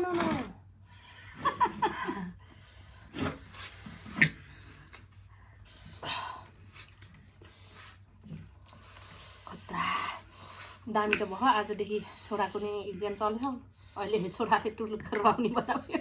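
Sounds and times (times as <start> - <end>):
chewing and mouth noises: 6.6 - 9.3.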